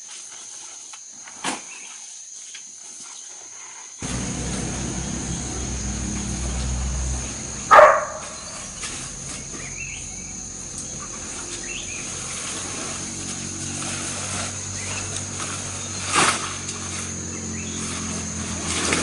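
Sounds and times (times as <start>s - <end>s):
high insect-like drone: 4.0s - 19.0s.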